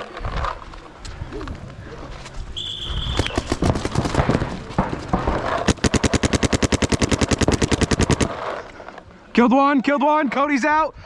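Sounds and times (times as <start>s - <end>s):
paintball markers firing: 3.0s - 8.8s.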